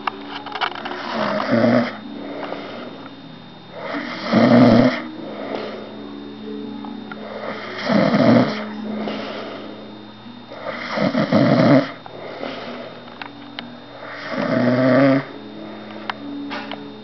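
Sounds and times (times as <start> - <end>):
soft breathing out: 0.9 - 6.1, 7.2 - 11.2, 11.8 - 13.2
man snoring loudly: 1.0 - 3.1, 3.7 - 5.9, 7.2 - 9.9, 10.5 - 13.0, 14.0 - 15.9.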